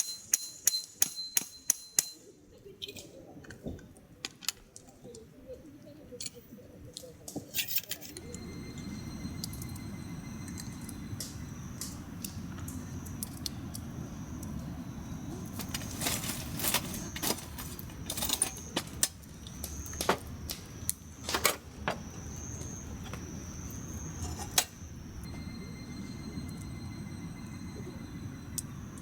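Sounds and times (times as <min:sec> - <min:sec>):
small hard objects clinking: 0:15.3 - 0:21.6.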